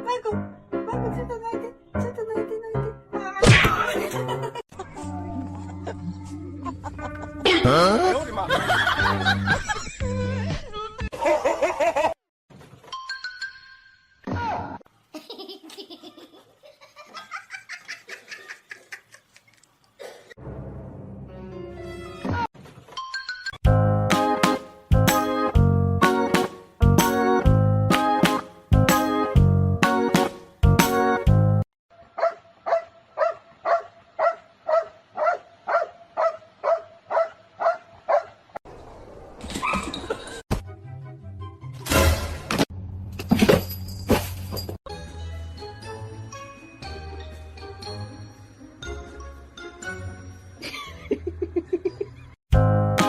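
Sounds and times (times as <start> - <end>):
person laughing hard: 3.8 - 12.2, 50.6 - 52.3
dog barking: 32.1 - 38.4.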